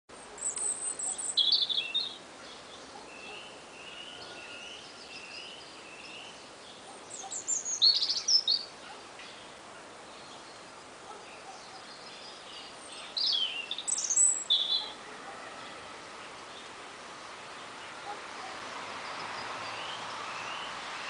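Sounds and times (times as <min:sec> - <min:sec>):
songbirds singing: 0:00.1 - 0:21.0
steady background hiss: 0:00.1 - 0:21.0.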